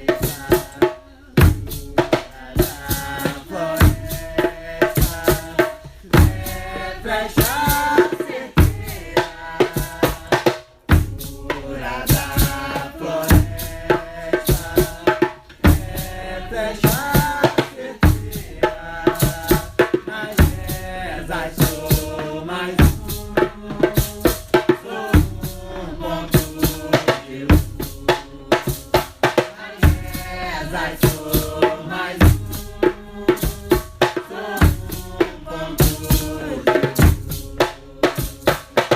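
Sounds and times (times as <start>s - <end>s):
chanted singing: 0.0s - 38.9s
drums beating steady rhythm: 0.0s - 38.9s.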